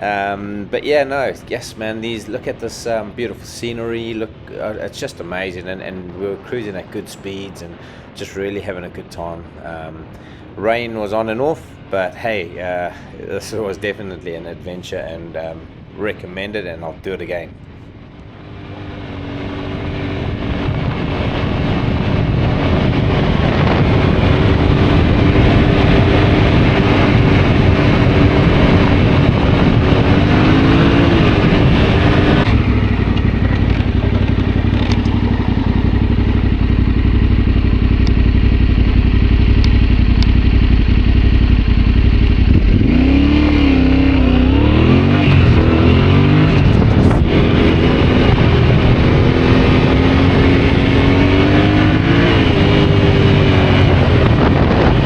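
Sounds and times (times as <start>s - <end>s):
rushing wind noise: 0.0s - 55.0s
motorcycle engine running: 17.9s - 55.0s.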